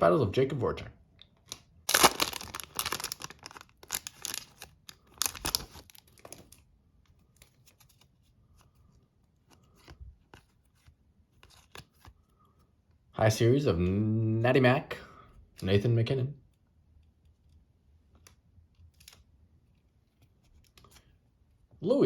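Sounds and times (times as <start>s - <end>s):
foil wrapper tearing and crinkling: 1.5s - 6.6s.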